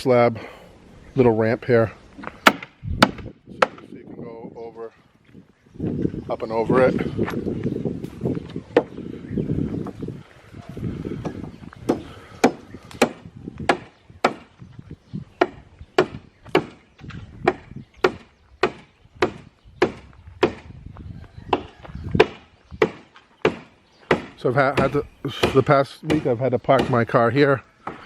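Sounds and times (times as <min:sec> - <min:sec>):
rhythmic blows on wood: 0:02.2 - 0:04.0, 0:10.8 - 0:14.6, 0:15.4 - 0:20.7, 0:21.5 - 0:28.0.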